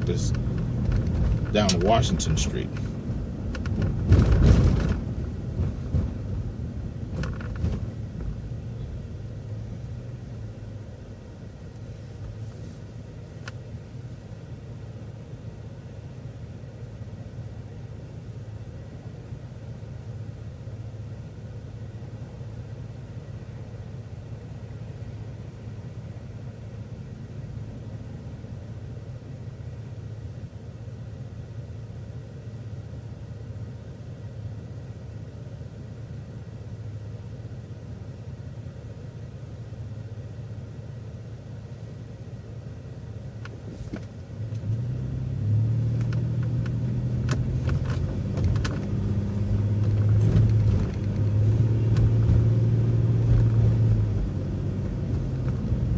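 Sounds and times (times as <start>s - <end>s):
bus engine humming: 0.0s - 55.9s
knocks and rattles: 0.3s - 2.0s, 3.5s - 6.4s, 7.1s - 8.4s.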